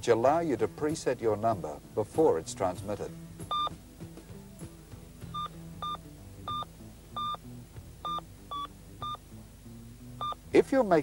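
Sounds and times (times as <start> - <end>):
phone keypad beeps: 3.5 - 3.7, 5.3 - 7.4, 8.0 - 9.2, 10.2 - 10.4.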